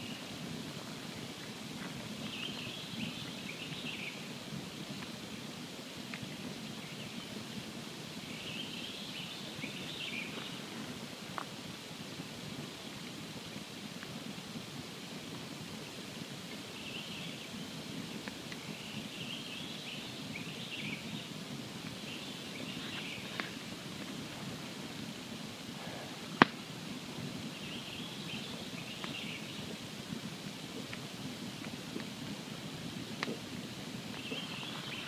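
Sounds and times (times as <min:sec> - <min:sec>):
campfire crackling: 0:00.0 - 0:35.0
fire loud pop: 0:26.4 - 0:26.6.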